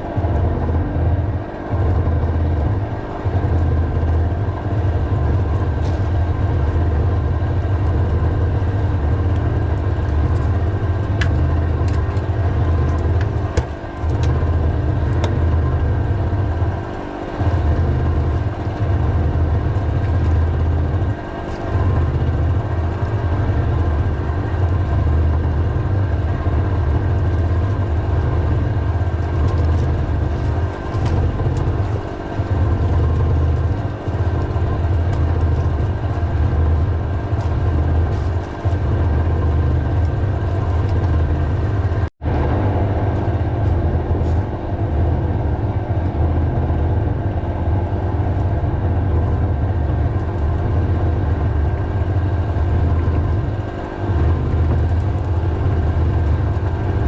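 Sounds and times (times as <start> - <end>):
engine rumbling: 0.0 - 57.0.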